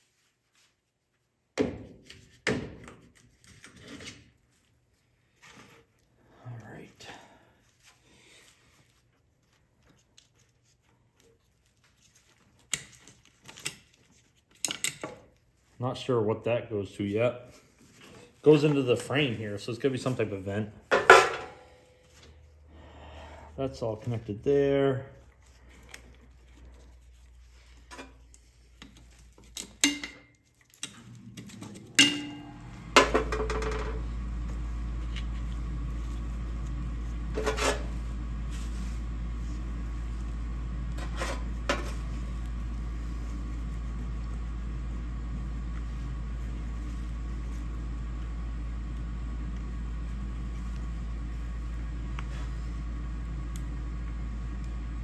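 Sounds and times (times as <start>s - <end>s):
machine hum with low drone: 30.8s - 55.0s.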